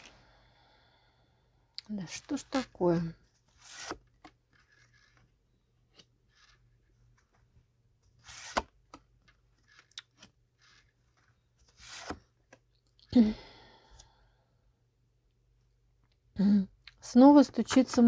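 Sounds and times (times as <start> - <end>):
cards sliding on table: 3.5 - 5.3, 6.0 - 6.7, 8.1 - 8.8, 9.6 - 12.4
person sighing or humming: 13.1 - 14.2, 16.4 - 16.8.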